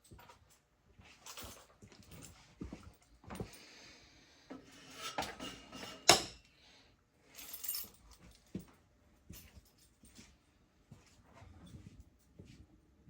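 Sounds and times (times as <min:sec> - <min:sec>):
objects scraping and rubbing: 0:04.6 - 0:06.1.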